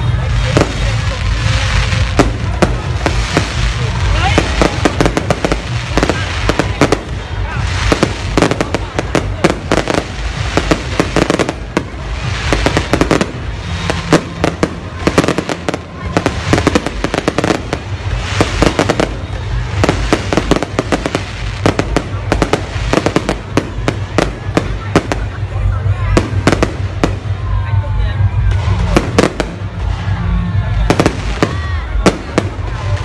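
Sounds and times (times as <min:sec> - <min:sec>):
fireworks bangs and crackling: 0:00.0 - 0:33.0.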